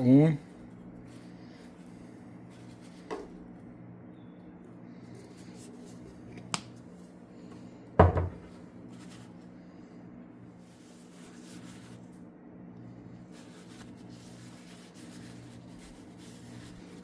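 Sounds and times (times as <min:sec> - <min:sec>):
steady low hum: 0:00.0 - 0:17.0
object knocking on hard bench: 0:08.0 - 0:08.4.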